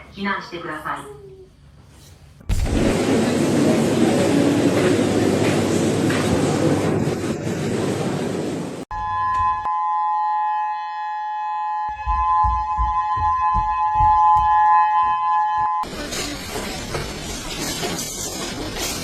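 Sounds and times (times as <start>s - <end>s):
loud rushing noise: 2.5s - 8.8s
two-pitched warning siren: 8.9s - 15.9s.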